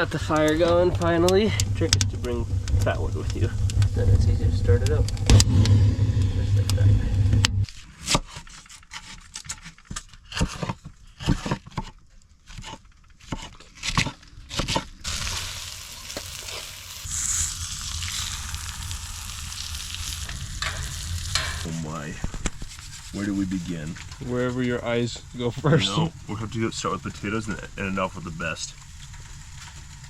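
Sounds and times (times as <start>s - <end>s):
steady sizzling hiss: 0.0s - 7.6s, 15.0s - 30.0s
fire crackling: 0.0s - 7.8s, 15.0s - 30.0s
sharp pops: 0.1s - 7.7s.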